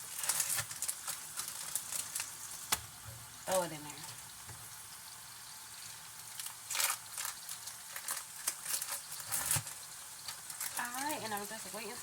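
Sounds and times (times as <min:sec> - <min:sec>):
food sizzling in a pan: 0:00.0 - 0:12.0
scraping and rustling: 0:06.7 - 0:09.9.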